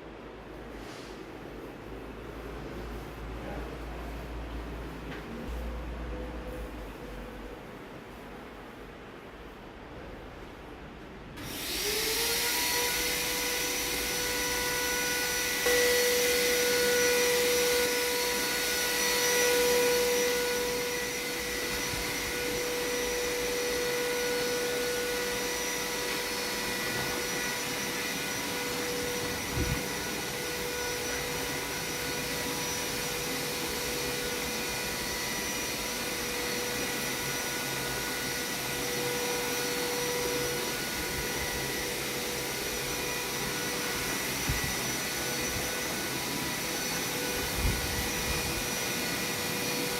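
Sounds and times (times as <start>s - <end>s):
power tool motor whining: 11.4s - 49.9s.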